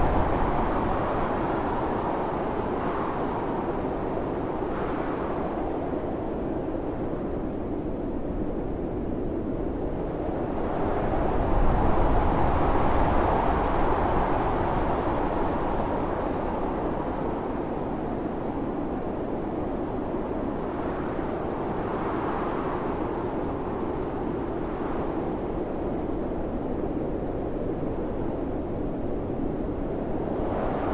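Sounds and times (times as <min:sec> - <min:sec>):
blizzard wind rushing: 0:00.0 - 0:30.9.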